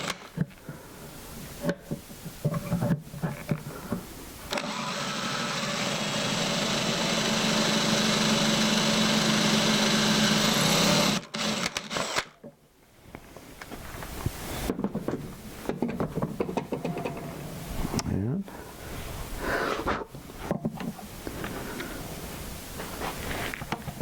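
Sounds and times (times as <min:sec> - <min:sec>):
electric drill boring wood: 0:00.0 - 0:00.3, 0:04.5 - 0:12.4.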